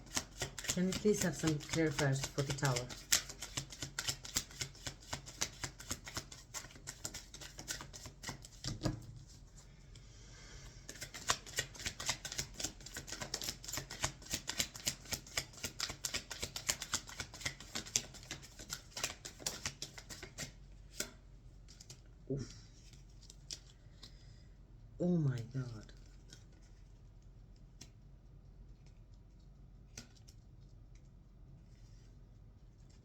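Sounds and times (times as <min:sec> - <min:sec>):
cards being shuffled: 0:00.0 - 0:09.1, 0:10.9 - 0:22.0.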